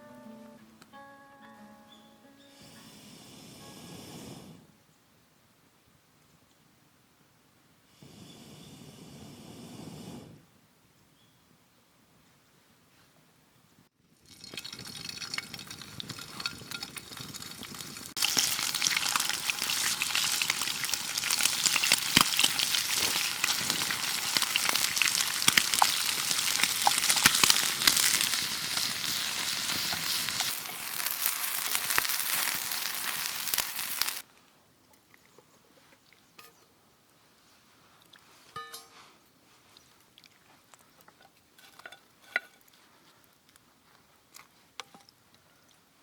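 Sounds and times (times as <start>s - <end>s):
wood fire crackles: 14.1s - 34.3s
food sizzling in a pan: 14.3s - 34.2s.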